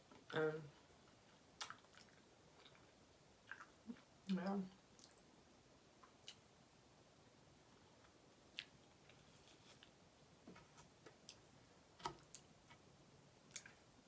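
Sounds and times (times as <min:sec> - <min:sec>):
mouth clicks and smacks eating: 0:01.6 - 0:04.1, 0:04.9 - 0:05.3, 0:06.0 - 0:06.5, 0:08.5 - 0:08.8.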